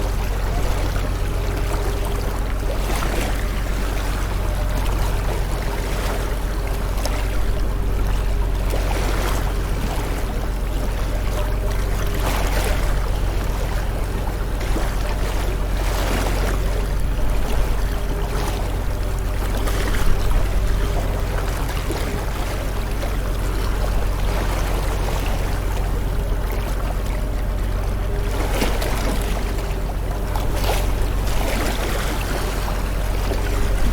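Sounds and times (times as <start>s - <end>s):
sea waves breaking on shore: 0.0s - 33.9s
low rumble: 26.5s - 33.9s.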